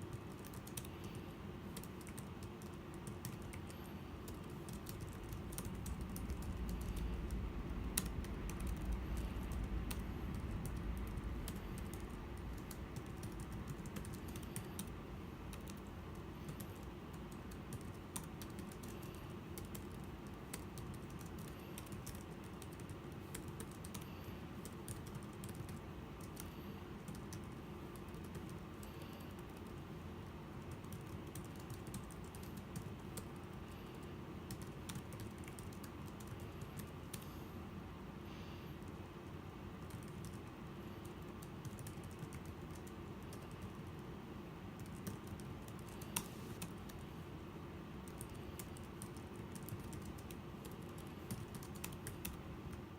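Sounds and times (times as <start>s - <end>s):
low rumble: 5.4s - 13.2s.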